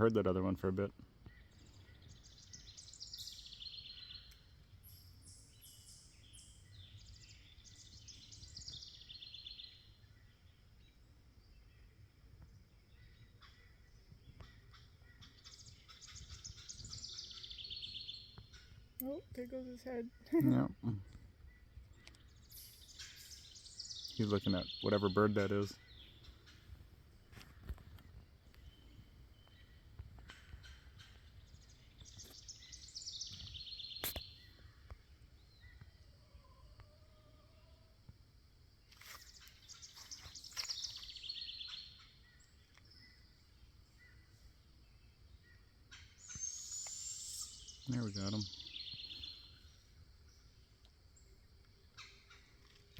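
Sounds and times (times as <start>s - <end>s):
faint outdoor background noise: 0.0s - 52.9s
songbird high trill: 45.9s - 49.6s.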